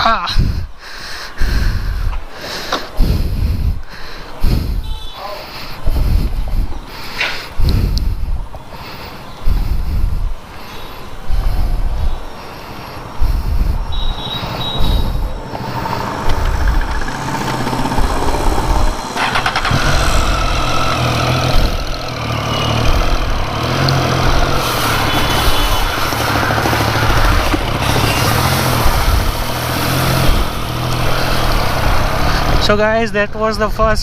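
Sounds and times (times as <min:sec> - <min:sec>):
motorcycle engine running: 0:13.3 - 0:32.8.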